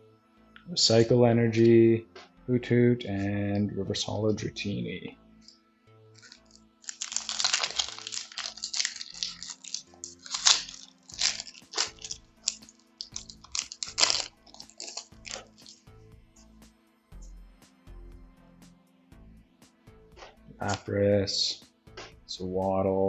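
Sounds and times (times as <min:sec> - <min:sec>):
soft background music: 0:00.0 - 0:23.0
foil pack crinkling and tearing: 0:06.2 - 0:15.8.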